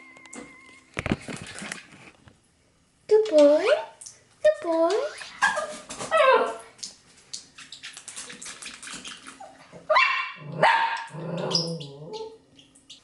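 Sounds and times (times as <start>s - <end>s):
dog yelping: 9.4s - 12.4s
dog whining: 11.1s - 12.4s.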